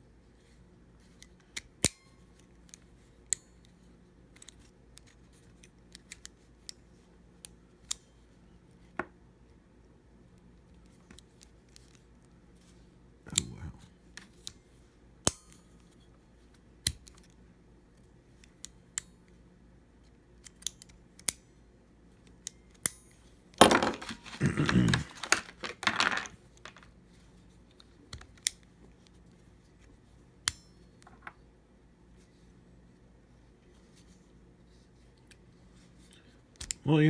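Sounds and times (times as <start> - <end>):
rattling and rustling: 23.6 - 26.9.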